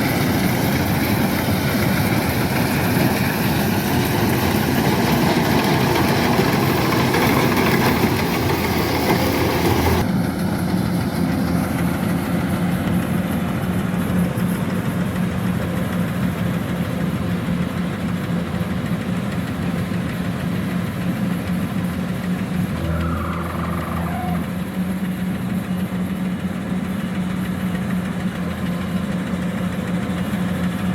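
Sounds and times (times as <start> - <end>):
diesel engine running: 0.0 - 30.9.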